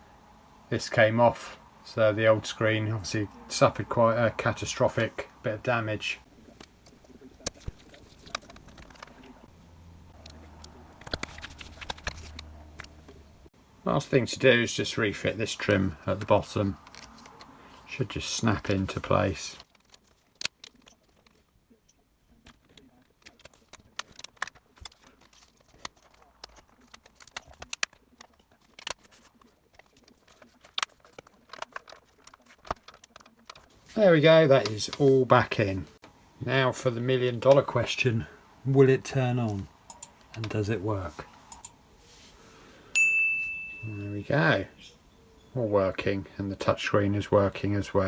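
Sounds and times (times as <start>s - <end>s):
small tools and plastic parts clicking: 16.8s - 17.6s, 19.6s - 33.7s.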